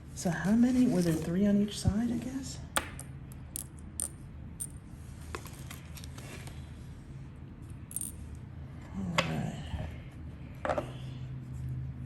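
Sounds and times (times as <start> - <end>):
small metal parts clicking: 2.9 - 4.8, 7.8 - 8.2.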